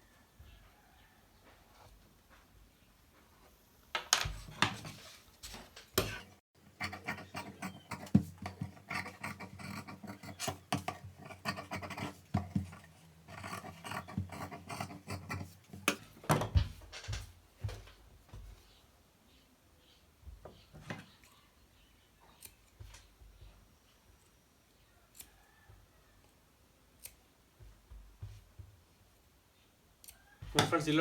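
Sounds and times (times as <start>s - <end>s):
marking tool scratching on cloth: 6.0s - 16.2s.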